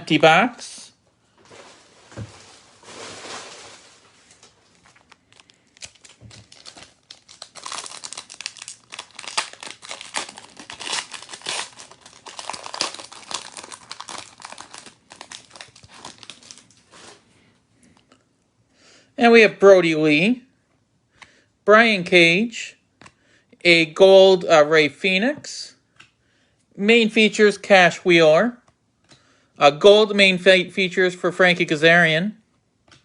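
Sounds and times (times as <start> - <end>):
foil wrapper crinkling: 1.6 - 17.1.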